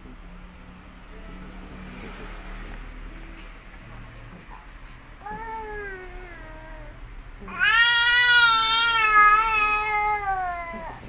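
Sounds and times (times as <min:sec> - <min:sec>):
small child crying: 0:05.2 - 0:11.0.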